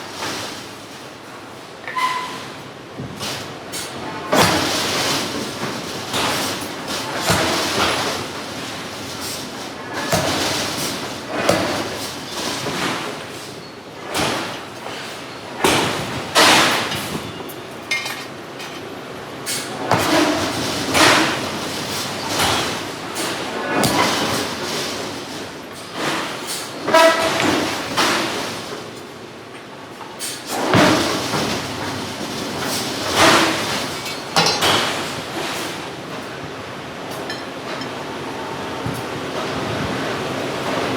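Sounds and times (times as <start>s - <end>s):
forging hammer striking steel: 34.4s - 35.0s.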